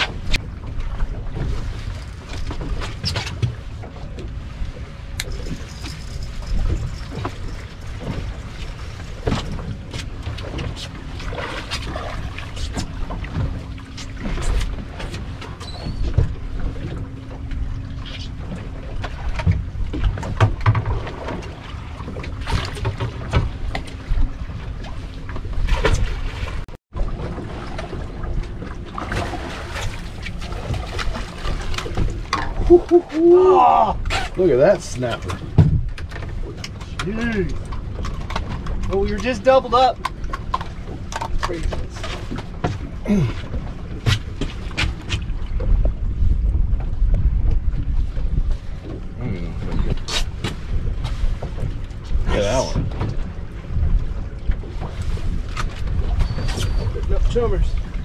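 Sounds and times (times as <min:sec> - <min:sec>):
wind buffeting microphone: 0:00.0 - 0:34.7, 0:40.0 - 0:58.0.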